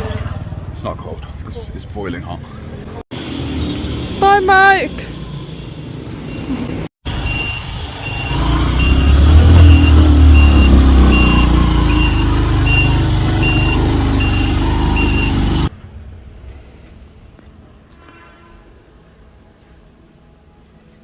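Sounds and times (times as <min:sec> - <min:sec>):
short high beep: 0:07.3 - 0:15.5.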